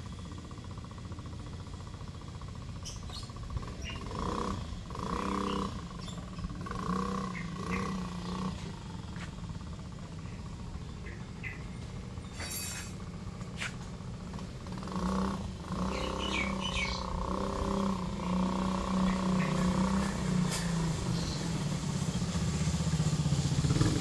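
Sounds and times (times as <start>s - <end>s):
small four-stroke engine running: 0.0s - 24.0s.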